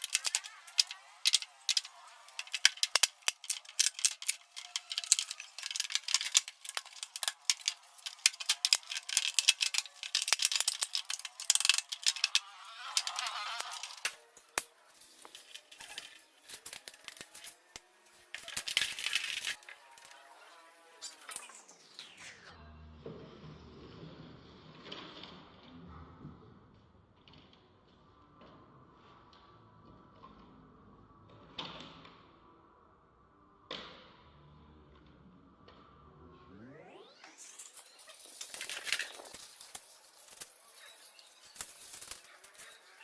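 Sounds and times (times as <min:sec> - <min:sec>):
rapid clicking and rattling: 0:00.0 - 0:14.2.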